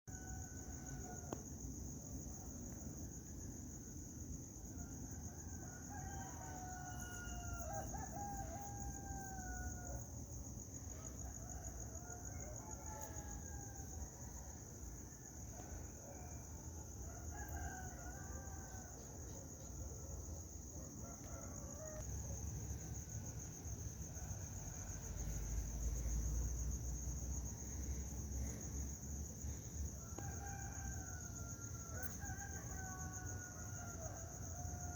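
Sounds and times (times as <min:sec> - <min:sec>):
roosters crowing: 0:05.4 - 0:10.0, 0:29.9 - 0:34.9.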